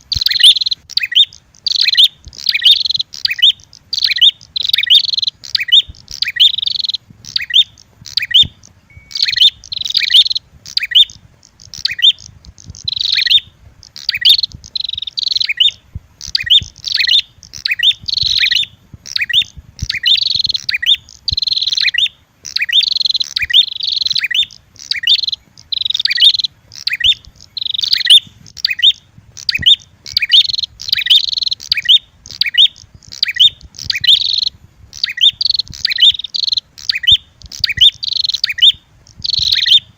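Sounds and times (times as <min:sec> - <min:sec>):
bird sharp high chirps: 0:00.0 - 0:39.9.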